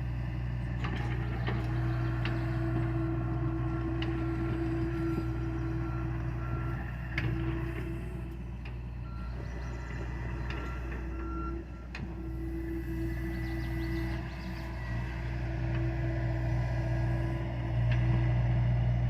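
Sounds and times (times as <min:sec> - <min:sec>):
excavator diesel engine running: 0:00.0 - 0:19.0
reversing alarm beeps: 0:09.0 - 0:15.1.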